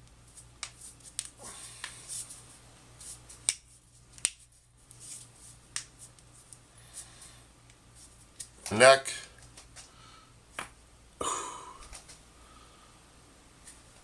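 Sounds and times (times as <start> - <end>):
knuckles cracking: 11.8 - 12.2.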